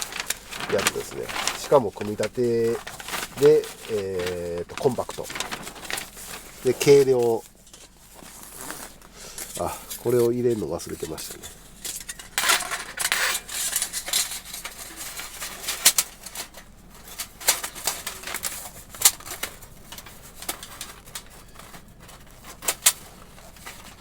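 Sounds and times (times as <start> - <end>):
rustling handling: 0.0 - 24.0
metal parts clinking: 11.4 - 16.5.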